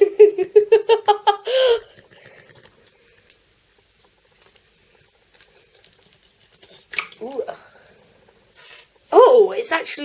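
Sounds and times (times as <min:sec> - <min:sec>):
girl giggling: 0:00.0 - 0:02.0.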